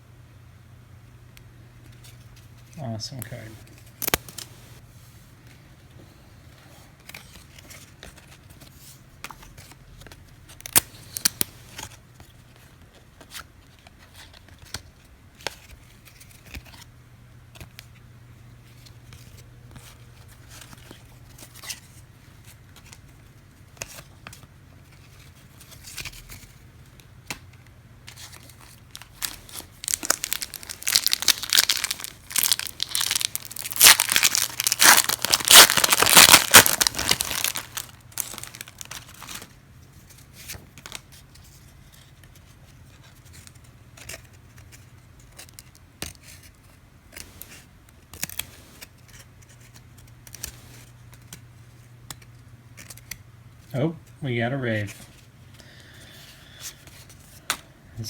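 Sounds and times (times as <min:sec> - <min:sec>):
cards being flipped through: 0:03.7 - 0:04.8, 0:07.0 - 0:12.4, 0:13.0 - 0:16.9, 0:17.5 - 0:18.0, 0:18.7 - 0:53.2
wrapper tearing and crinkling: 0:03.9 - 0:04.7, 0:10.6 - 0:11.9, 0:28.1 - 0:39.5, 0:40.8 - 0:41.1.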